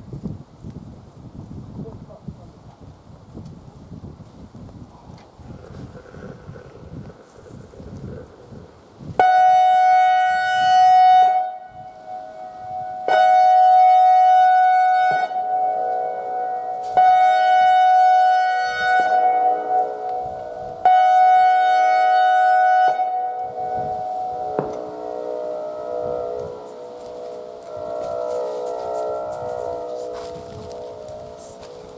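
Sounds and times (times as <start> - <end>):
two-tone warning siren: 9.1 - 31.9.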